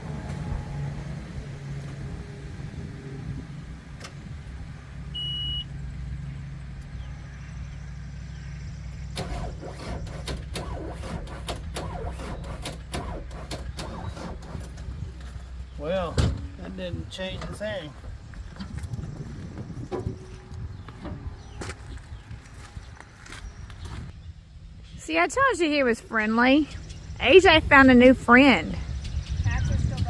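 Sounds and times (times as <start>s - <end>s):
engine humming: 0.0s - 30.0s
short high beep: 5.2s - 5.7s.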